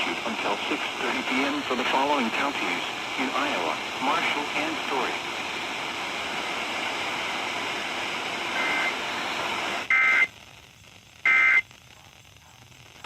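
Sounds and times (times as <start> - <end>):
radio static hiss: 0.0 - 13.0
digital data tone bursts: 9.9 - 10.3, 11.2 - 11.6.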